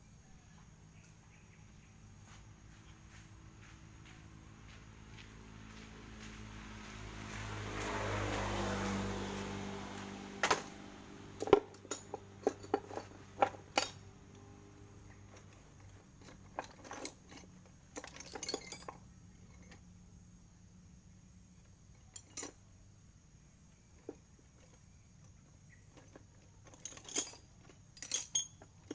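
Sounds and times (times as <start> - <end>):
metallic clinks and knocks: 8.9 - 19.8, 21.9 - 22.6, 25.9 - 28.9.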